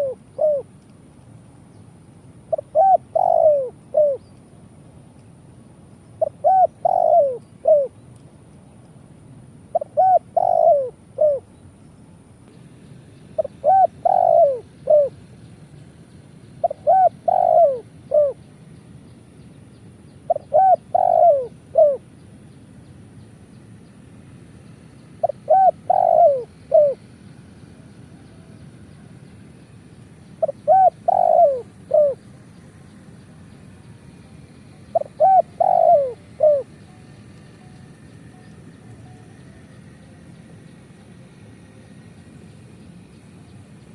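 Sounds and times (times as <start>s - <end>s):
dove cooing: 0.0s - 0.7s, 2.5s - 4.3s, 6.2s - 8.0s, 9.7s - 11.5s, 13.4s - 15.2s, 16.6s - 18.5s, 20.3s - 22.1s, 25.2s - 27.1s, 30.4s - 32.4s, 34.6s - 40.2s.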